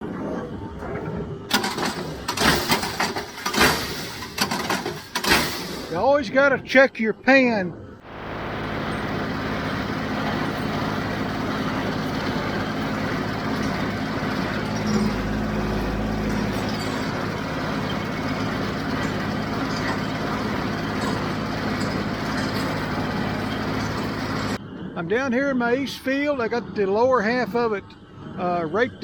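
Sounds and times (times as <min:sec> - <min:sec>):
tractor diesel engine running: 0:01.3 - 0:06.8, 0:07.9 - 0:25.0.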